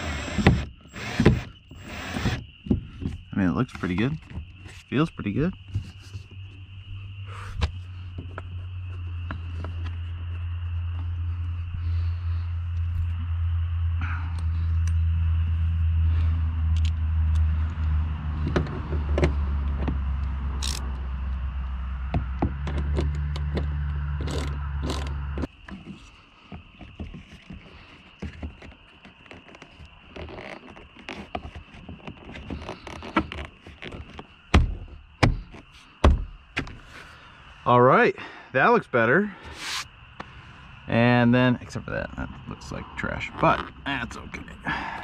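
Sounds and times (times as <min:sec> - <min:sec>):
steady low hum: 0:00.0 - 0:26.9
loud thunks: 0:34.5 - 0:36.8.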